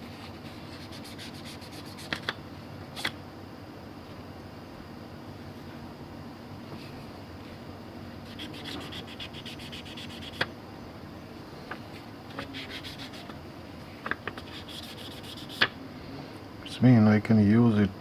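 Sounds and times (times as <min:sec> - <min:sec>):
rubbing and scratching strokes: 0:00.0 - 0:03.2, 0:08.2 - 0:10.5, 0:11.9 - 0:15.8.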